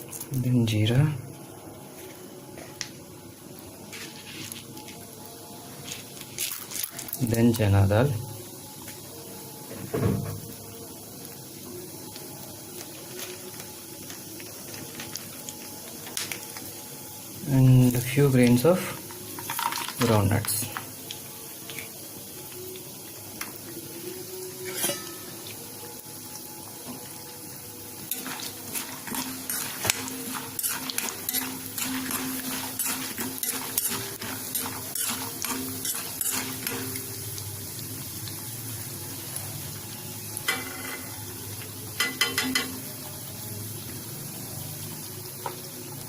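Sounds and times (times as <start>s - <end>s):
oil sizzling in a pan: 0.0s - 46.0s
spoon stirring and knocking on pan: 28.1s - 37.0s, 42.0s - 42.8s.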